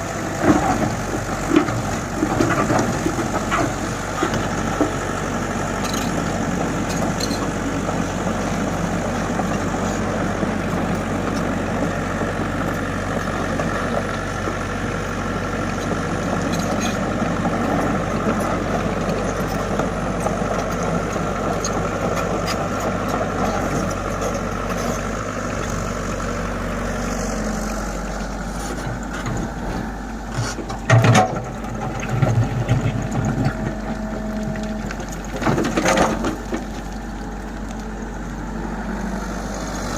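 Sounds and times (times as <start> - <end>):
excavator diesel engine droning: 0.0 - 39.9
excavator knocks and scrapes: 28.5 - 36.8.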